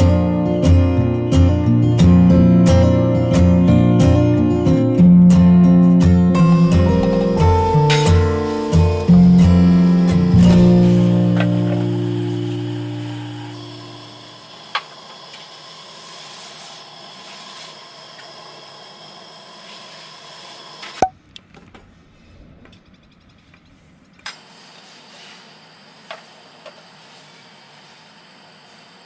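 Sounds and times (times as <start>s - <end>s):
steady hiss: 6.6s - 17.7s.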